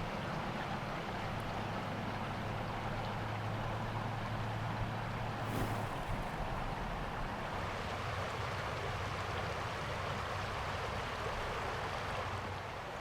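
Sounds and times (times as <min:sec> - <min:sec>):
rushing outdoor noise: 0:03.0 - 0:12.6.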